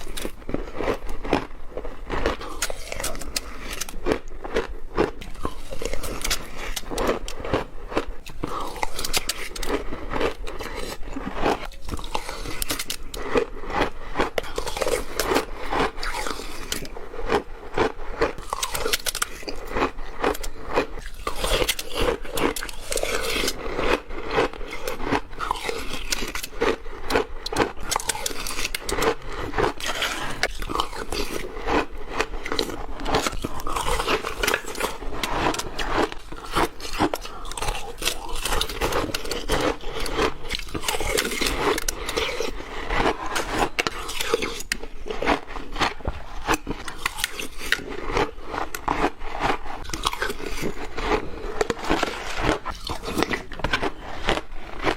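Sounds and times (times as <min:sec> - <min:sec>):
crunching and chewing ice: 0:00.0 - 0:54.9.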